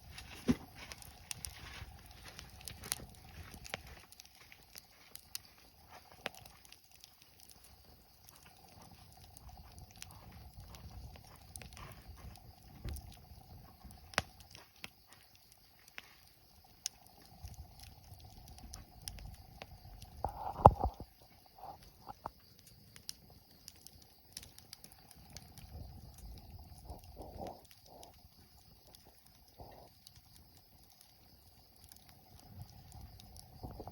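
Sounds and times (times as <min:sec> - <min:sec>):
wood fire crackling: 0:00.0 - 0:33.9.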